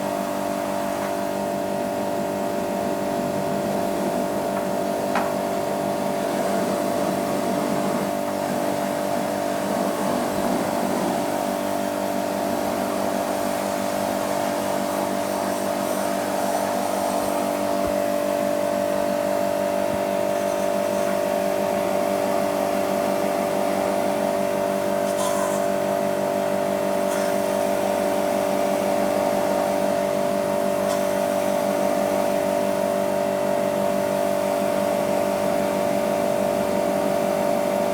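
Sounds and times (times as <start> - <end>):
hiss: 25.0 - 26.0, 27.0 - 28.3.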